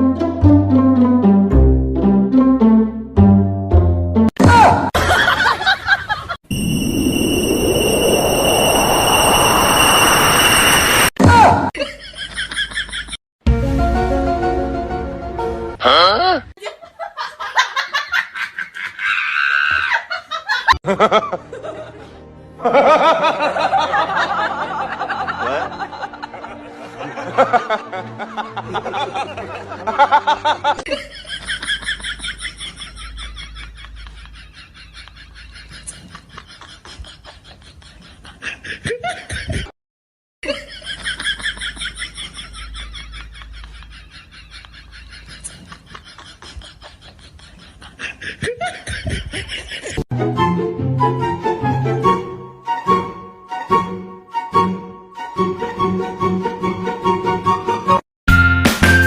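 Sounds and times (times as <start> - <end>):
music: 0.0 - 4.3, 13.4 - 15.8, 20.9 - 30.7, 50.1 - 59.0
person laughing: 15.8 - 21.9, 24.5 - 39.7, 40.4 - 50.0.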